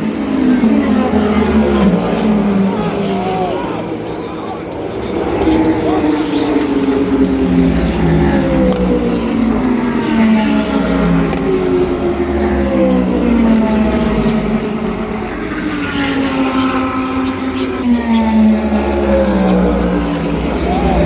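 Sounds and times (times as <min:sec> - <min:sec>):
race cars passing at speed: 0:00.0 - 0:21.0.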